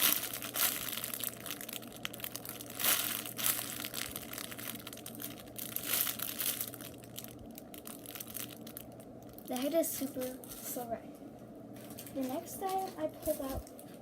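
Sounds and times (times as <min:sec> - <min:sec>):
plastic wrapper crinkling: 0:00.0 - 0:10.8, 0:11.8 - 0:14.0.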